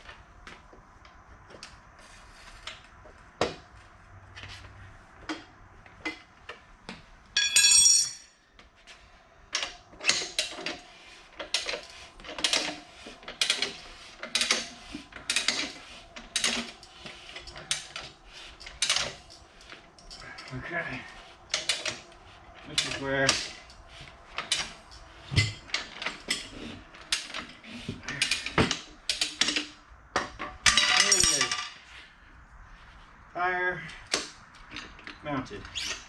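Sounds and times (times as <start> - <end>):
tire bead knocking and scraping: 0.0 - 33.2
metal clicks and knocks: 9.5 - 20.6, 22.7 - 31.8.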